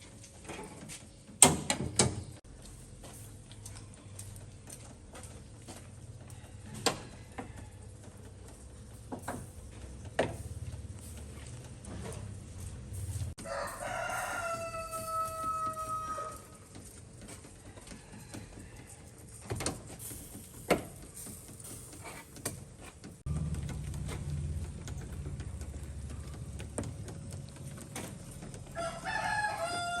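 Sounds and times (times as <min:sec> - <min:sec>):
rooster crowing: 0:06.3 - 0:08.0, 0:13.4 - 0:16.7, 0:28.6 - 0:30.0.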